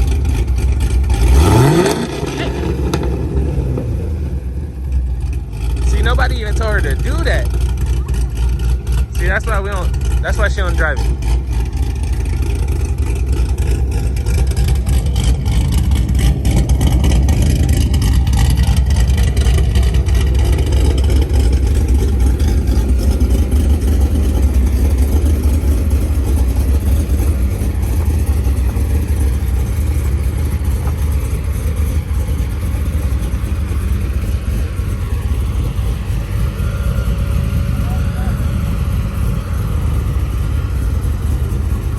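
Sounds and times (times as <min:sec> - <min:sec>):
choppy engine exhaust: 0:00.0 - 0:41.9.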